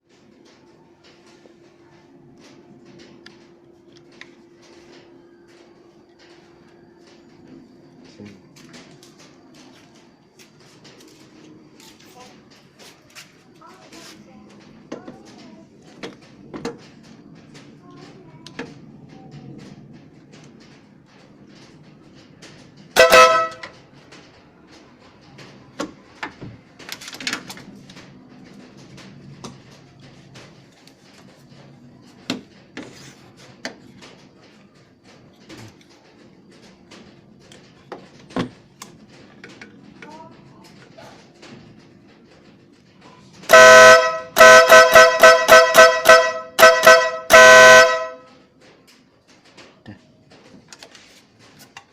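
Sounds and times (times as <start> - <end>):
two-tone air horn blast: 23.0 - 23.7, 43.5 - 48.3.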